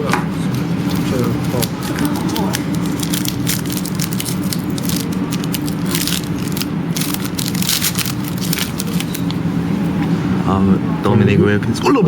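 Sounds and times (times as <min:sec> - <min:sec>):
steady low hum: 0:00.0 - 0:12.0
cards being handled: 0:00.5 - 0:09.4
wrapper crinkling and tearing: 0:00.8 - 0:09.4.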